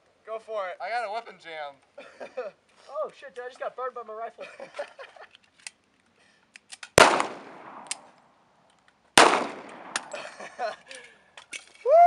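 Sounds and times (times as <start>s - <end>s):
gunshots: 7.0s - 8.2s, 9.2s - 10.5s.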